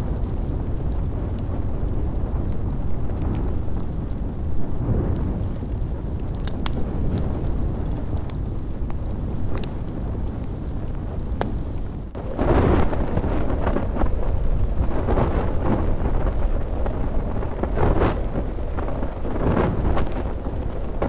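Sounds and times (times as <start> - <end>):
fire crackling and popping: 0.0 - 21.0
flames rumbling: 0.0 - 21.0.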